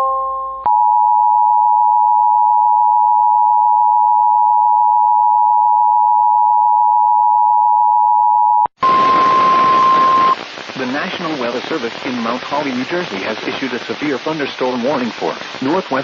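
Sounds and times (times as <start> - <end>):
hissy radio broadcast tone: 8.8 - 16.0.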